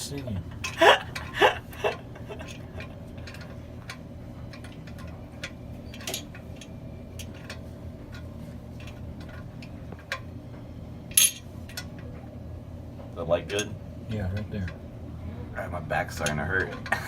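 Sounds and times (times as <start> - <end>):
steady low hum: 0.0 - 17.0
tools clicking and tapping: 11.1 - 12.1.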